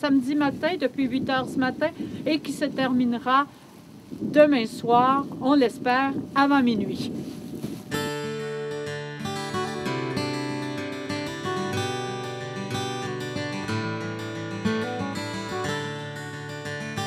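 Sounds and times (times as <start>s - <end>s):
plucked acoustic guitar: 7.9s - 17.0s.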